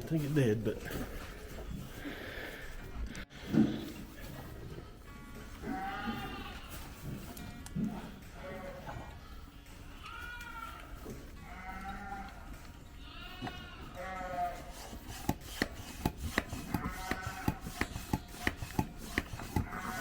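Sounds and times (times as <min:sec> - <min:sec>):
sheep bleating: 0:05.1 - 0:07.0, 0:08.3 - 0:14.8, 0:16.7 - 0:18.3, 0:19.6 - 0:20.0.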